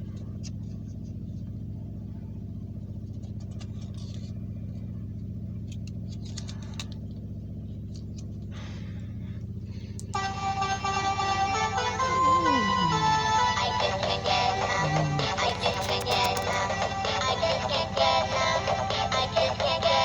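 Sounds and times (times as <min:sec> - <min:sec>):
motor humming with fast pulsing: 0:03.1 - 0:20.0
light clicks: 0:15.5 - 0:16.6.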